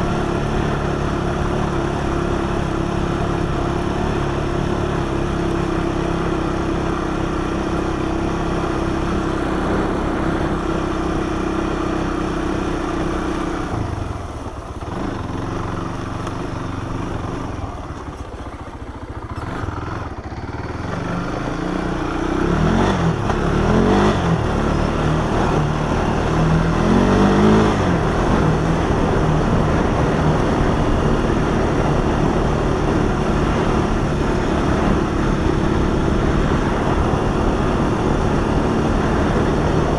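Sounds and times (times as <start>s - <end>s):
four-wheeler engine revving: 0.0s - 39.9s.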